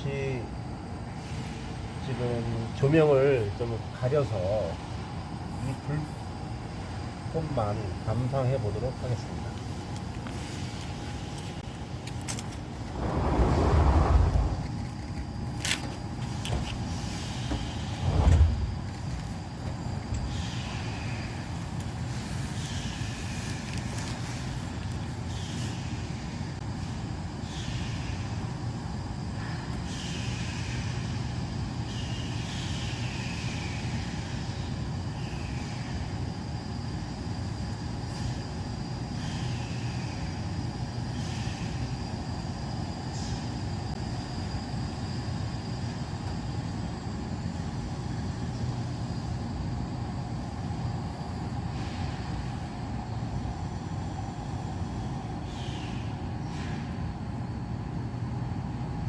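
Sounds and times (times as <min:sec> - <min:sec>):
fire rumbling in stove: 0:11.6 - 0:17.0, 0:17.8 - 0:19.5
fire crackling: 0:12.2 - 0:15.1.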